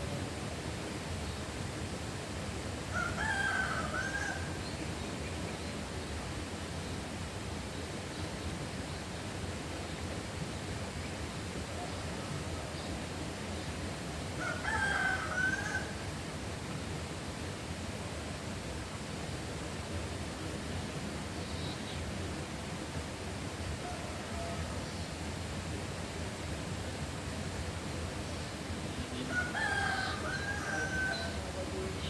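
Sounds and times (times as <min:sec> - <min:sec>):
steady rushing hiss: 0:00.0 - 0:32.0
rooster crowing: 0:02.9 - 0:04.6, 0:14.4 - 0:16.0, 0:23.8 - 0:24.9, 0:29.2 - 0:31.6.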